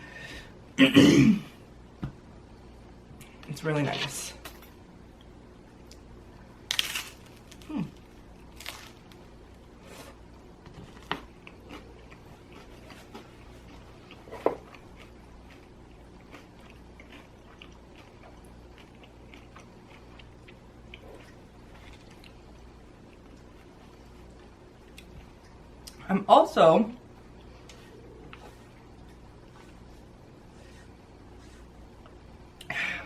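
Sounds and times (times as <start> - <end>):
person chewing crispy pizza: 5.2 - 26.0.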